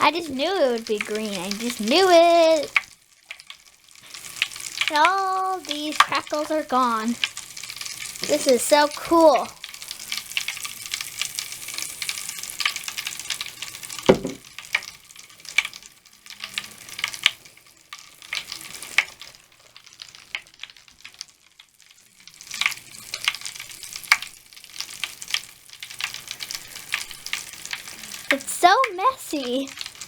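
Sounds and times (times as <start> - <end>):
bath crackles popping and fizzing: 0.0 - 30.0
loud knock: 14.1 - 14.4.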